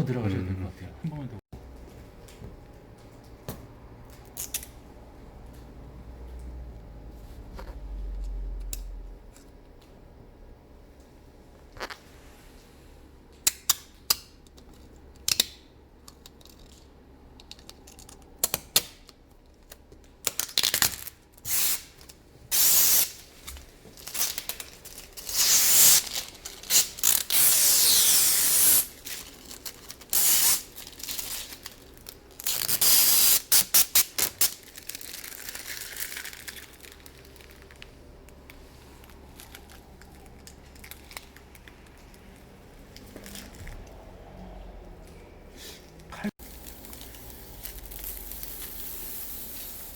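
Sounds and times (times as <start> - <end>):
protective film peeling: 23.9 - 37.9.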